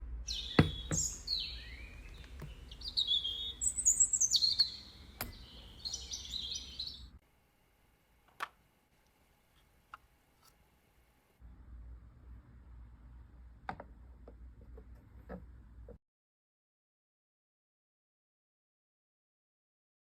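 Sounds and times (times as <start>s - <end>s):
small birds chirping: 0.3s - 7.2s.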